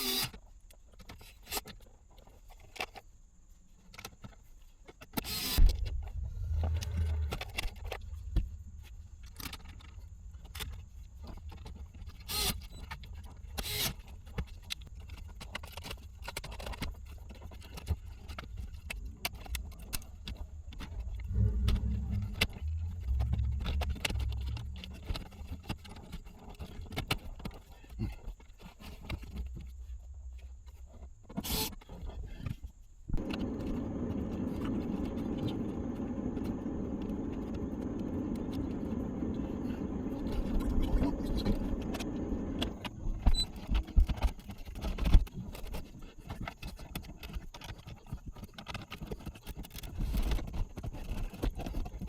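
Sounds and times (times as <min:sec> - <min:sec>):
low rumble: 0:05.5 - 0:13.4, 0:19.4 - 0:26.4, 0:33.1 - 0:43.8.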